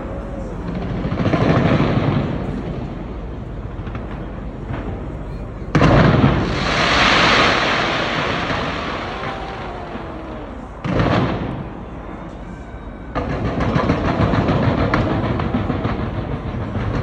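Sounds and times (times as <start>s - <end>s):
fireworks crackling: 5.8s - 11.8s
firework burst: 5.8s - 12.0s, 13.2s - 17.0s.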